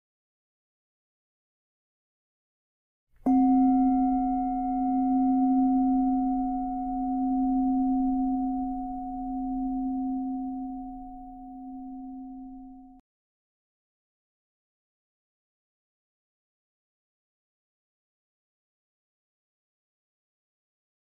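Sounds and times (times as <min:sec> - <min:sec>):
meditation bell ringing: 0:03.2 - 0:13.0.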